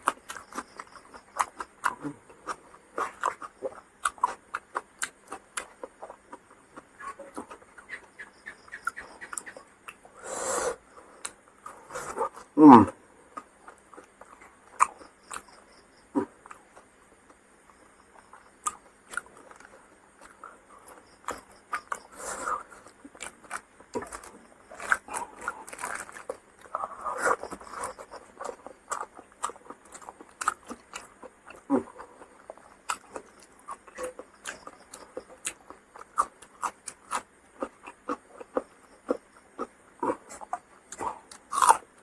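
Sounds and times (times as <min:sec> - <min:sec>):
person chewing with smacks: 0:00.0 - 0:08.1, 0:13.4 - 0:41.9
crisp crunches: 0:23.2 - 0:26.4.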